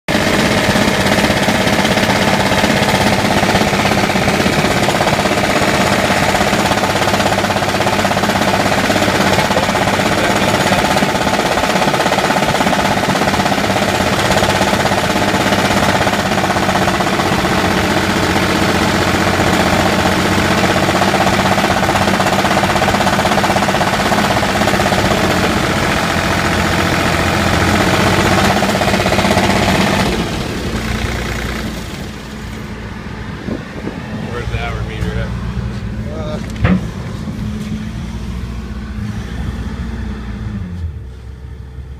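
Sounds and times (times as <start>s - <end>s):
engine knocking: 0.1s - 32.5s.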